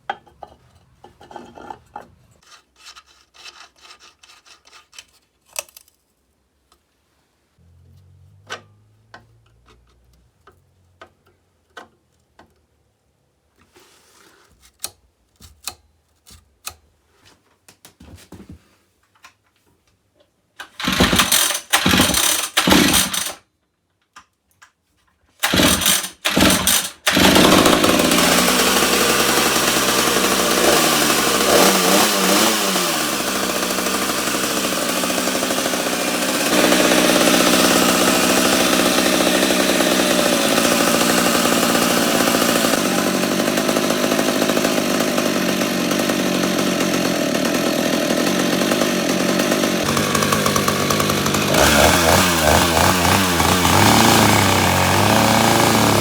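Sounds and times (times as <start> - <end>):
chainsaw engine starting and running: 20.6 - 23.4, 25.4 - 56.0.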